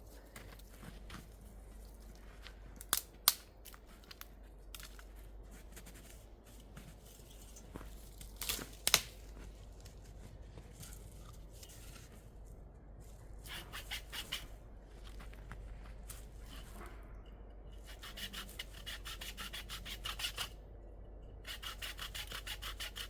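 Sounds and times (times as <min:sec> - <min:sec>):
faint rustling and crackling: 0:03.7 - 0:13.4
sharp crisp snips: 0:08.4 - 0:09.2.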